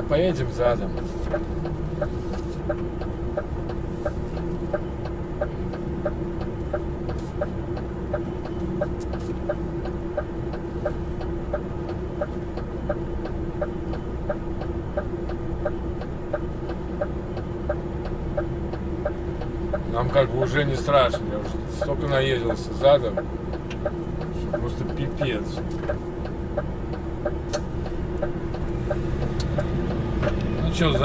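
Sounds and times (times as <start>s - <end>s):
diesel truck engine humming: 0.0s - 31.0s
reversing warning pips: 0.0s - 31.0s.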